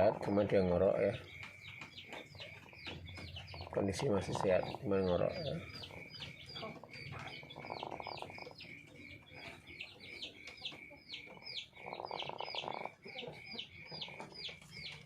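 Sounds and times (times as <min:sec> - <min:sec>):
chicken snoring rasp: 0:00.0 - 0:00.8, 0:03.6 - 0:06.2, 0:07.3 - 0:08.4, 0:11.4 - 0:13.2
rapid high chirping: 0:00.0 - 0:15.0.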